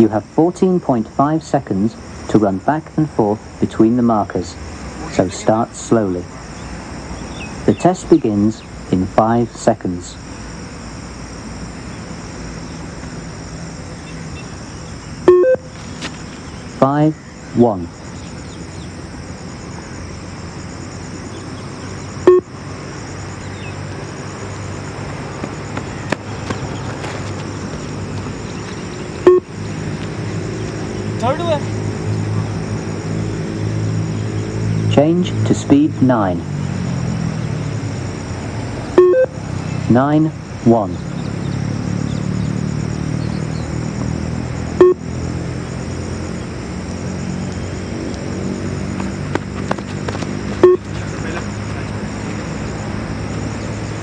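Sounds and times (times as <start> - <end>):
low background noise: 0.0 - 54.0
short electronic beeps: 15.3 - 15.7, 22.2 - 22.5, 29.2 - 29.5, 39.0 - 39.4, 44.8 - 45.0, 50.6 - 50.9.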